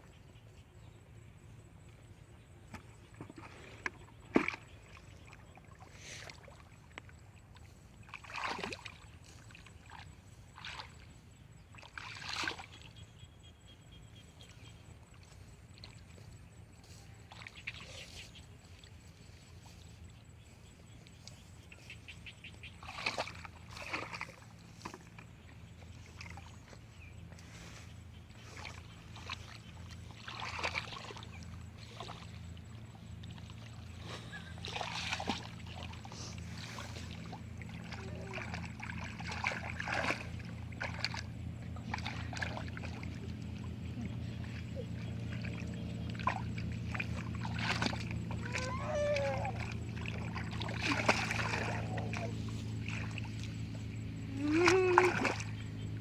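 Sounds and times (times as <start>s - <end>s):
water splashing: 8.1s - 11.0s, 11.7s - 12.9s, 21.8s - 27.2s, 28.2s - 56.0s.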